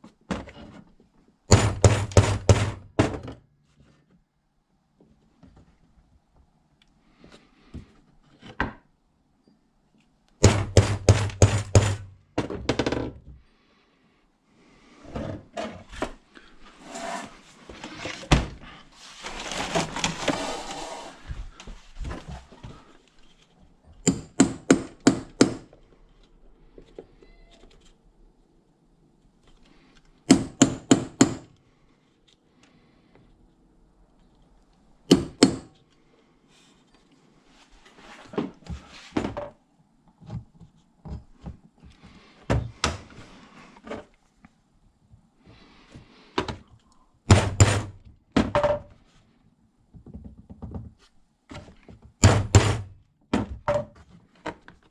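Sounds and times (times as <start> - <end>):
handling and rustling: 15.4 - 23.8
sharp knocks of hand tools: 35.1 - 35.7.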